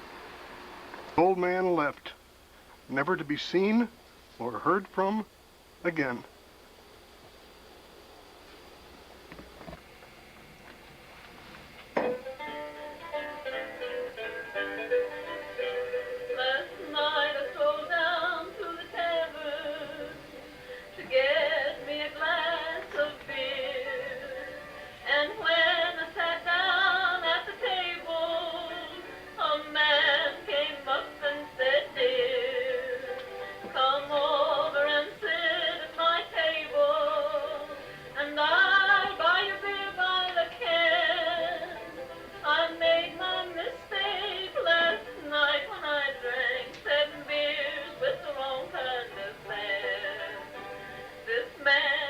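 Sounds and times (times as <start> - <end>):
music: 11.9 - 52.0.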